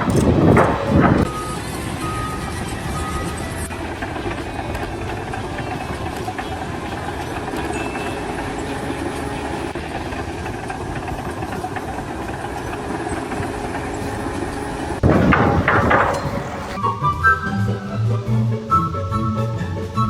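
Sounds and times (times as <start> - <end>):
engine rumbling steadily: 0.0 - 20.0.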